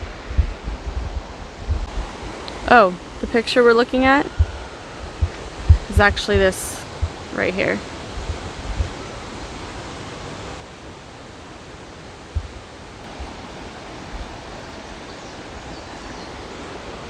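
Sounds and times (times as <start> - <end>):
wind thump on microphone: 0.0 - 2.2, 4.0 - 9.1
river water rushing over falls: 6.6 - 17.0.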